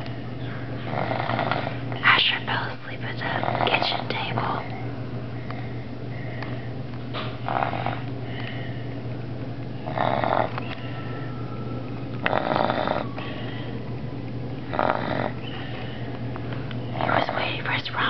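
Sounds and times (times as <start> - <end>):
boy snoring: 0.9 - 1.8, 3.2 - 4.0, 7.4 - 8.0, 9.8 - 10.6, 12.2 - 13.2, 14.7 - 15.5.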